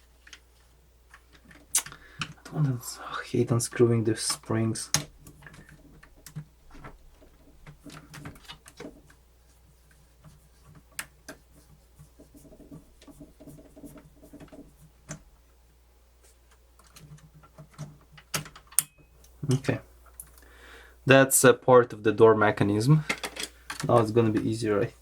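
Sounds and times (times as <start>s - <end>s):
clicks of plastic and metal parts: 23.0s - 24.1s.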